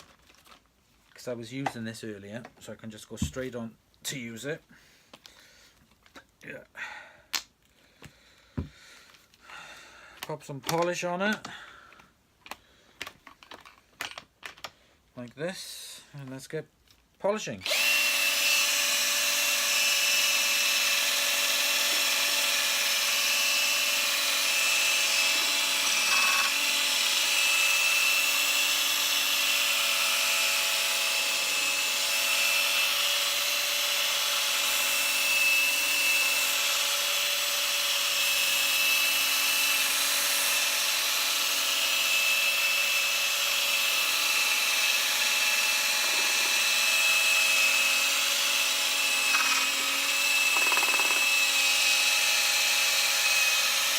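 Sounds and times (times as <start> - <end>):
polishing machine motor whine: 49.3 - 51.4.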